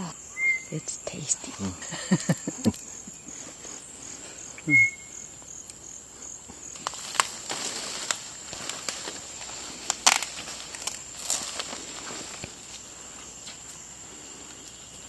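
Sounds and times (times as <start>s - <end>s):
insects droning: 0.0s - 15.0s
twigs crackling underfoot: 5.2s - 15.0s.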